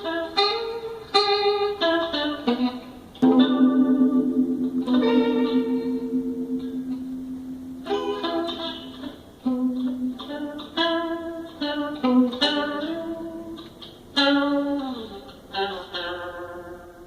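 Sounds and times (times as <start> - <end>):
guitar plucked notes: 3.2 - 13.8.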